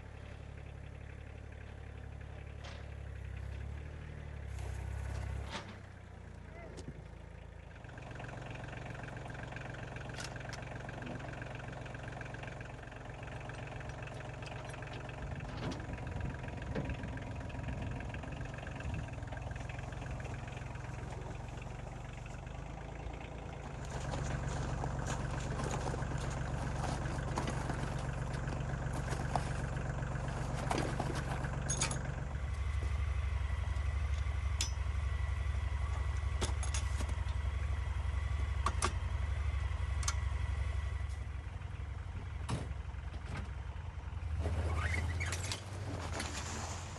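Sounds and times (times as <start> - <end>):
tractor engine running: 0.0 - 46.9
sharp metal clanks: 34.6 - 34.9.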